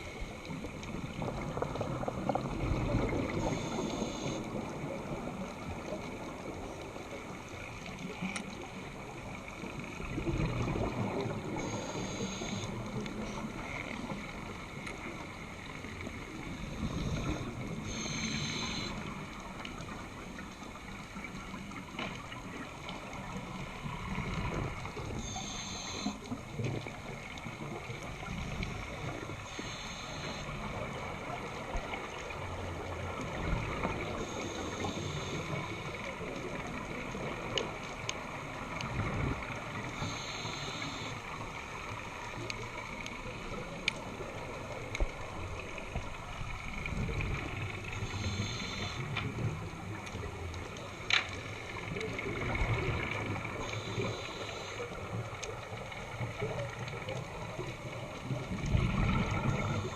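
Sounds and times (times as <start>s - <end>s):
low rumble of water: 0.0s - 59.9s
diver breathing through regulator: 11.6s - 12.8s, 16.7s - 19.0s, 25.2s - 26.2s, 39.9s - 41.3s, 48.0s - 49.2s.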